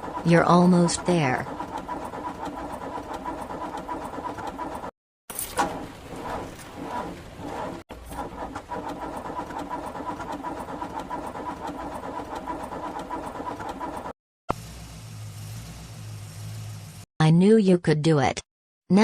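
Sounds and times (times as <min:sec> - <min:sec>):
car engine running: 0:00.0 - 0:04.9, 0:05.6 - 0:17.1
car engine cranking: 0:00.0 - 0:14.2.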